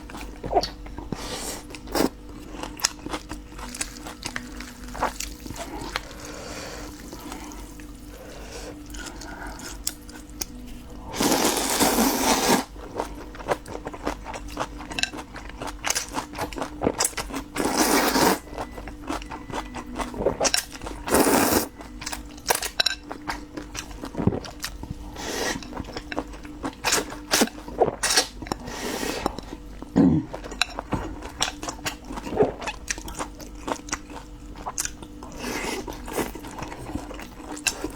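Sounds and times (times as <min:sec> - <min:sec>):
wet chewing and mouth clicks: 0:29.2 - 0:37.9.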